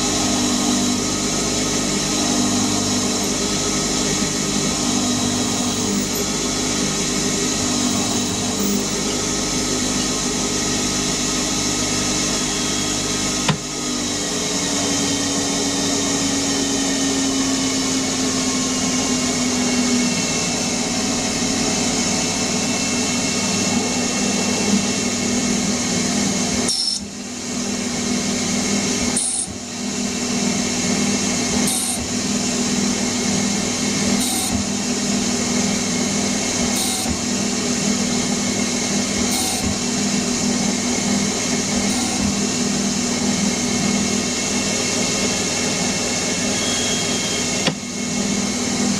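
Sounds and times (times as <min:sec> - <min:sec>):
lathe whirring: 0:00.0 - 0:48.9.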